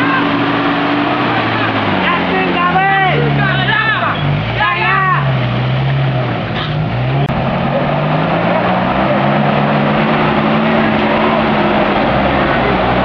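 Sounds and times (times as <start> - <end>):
off-road vehicle engine running: 0.0 - 13.0.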